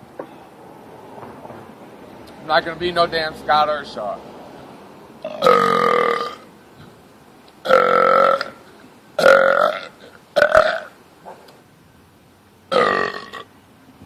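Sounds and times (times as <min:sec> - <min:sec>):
man belching: 0:05.2 - 0:06.5, 0:07.6 - 0:08.6, 0:09.2 - 0:10.9, 0:12.7 - 0:13.5.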